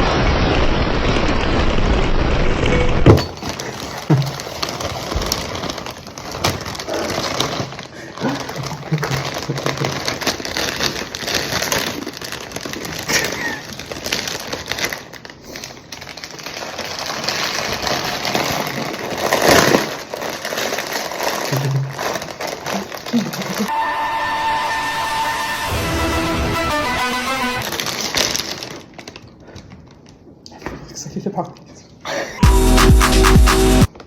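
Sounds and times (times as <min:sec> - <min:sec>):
plastic snack bag crinkling: 0:03.3 - 0:24.2, 0:27.6 - 0:30.4.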